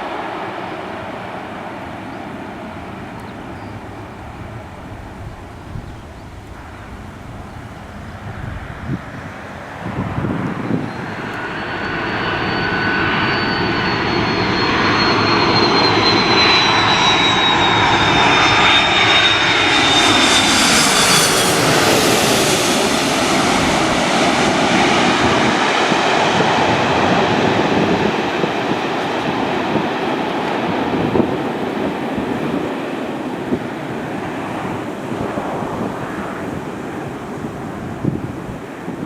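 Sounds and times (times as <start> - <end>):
jet engine whine: 0.0 - 39.0
jet rumble: 0.0 - 39.0.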